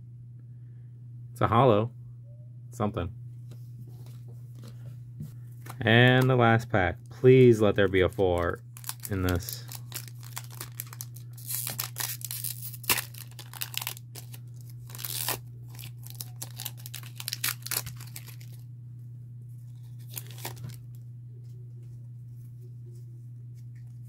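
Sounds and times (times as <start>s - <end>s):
foil wrapper tearing and crinkling: 7.3s - 18.6s, 19.7s - 21.0s.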